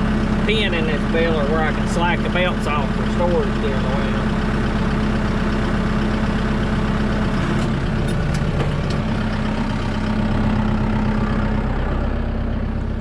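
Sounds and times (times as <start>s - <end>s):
tractor engine idling: 0.0s - 13.0s.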